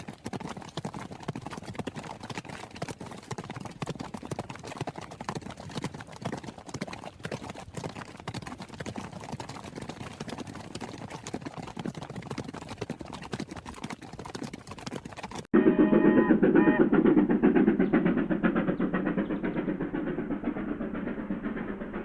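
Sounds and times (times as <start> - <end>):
horse hooves clip-clopping: 0.0 - 15.5.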